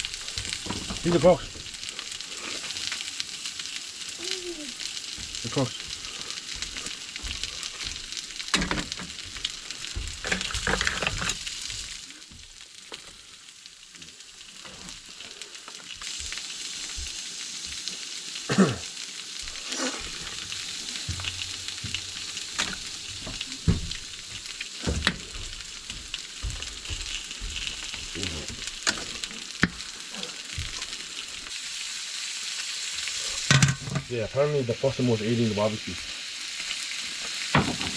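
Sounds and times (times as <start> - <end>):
food sizzling on a barbecue: 0.0 - 37.9
cooking utensils clicking: 28.8 - 29.8.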